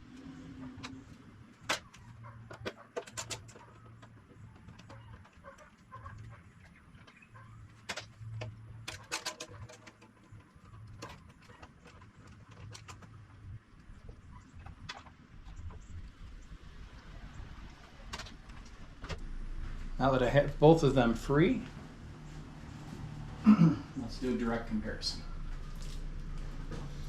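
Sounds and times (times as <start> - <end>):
low hum: 15.4 - 27.0.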